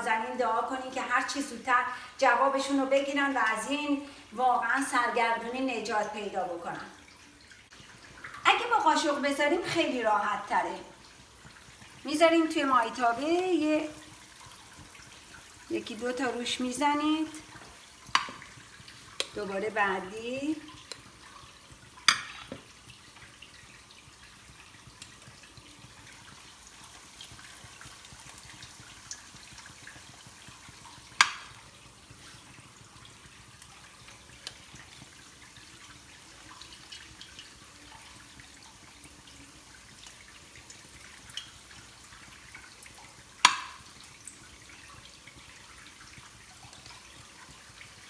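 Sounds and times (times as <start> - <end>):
patties sizzling in oil: 0.0 - 48.0
spoon knocking against pan: 18.1 - 18.6, 22.0 - 22.7, 31.2 - 31.6, 43.4 - 43.9.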